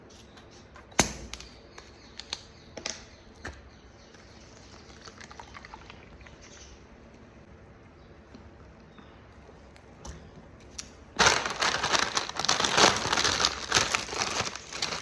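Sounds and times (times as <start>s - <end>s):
eating potato chips: 11.2s - 15.0s.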